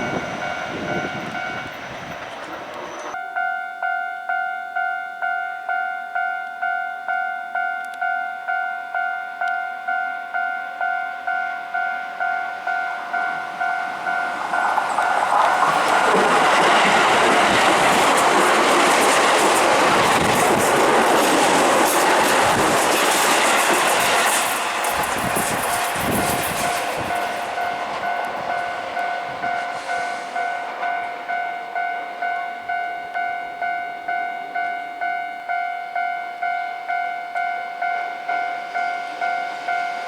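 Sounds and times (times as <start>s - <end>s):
train wheels and running noise: 0.0s - 3.2s, 12.7s - 32.4s
level crossing warning bell: 0.0s - 40.0s.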